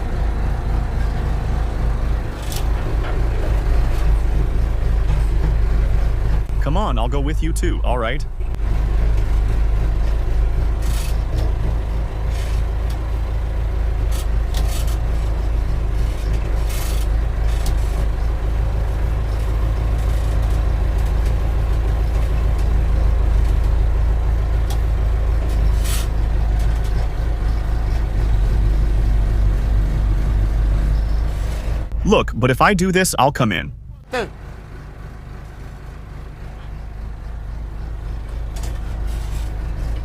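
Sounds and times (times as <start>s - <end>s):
diesel engine running: 0.0s - 40.0s.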